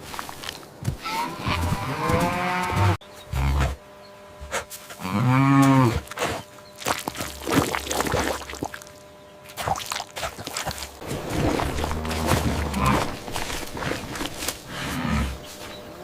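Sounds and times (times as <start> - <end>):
cow mooing: 1.0 - 3.8, 5.0 - 6.1.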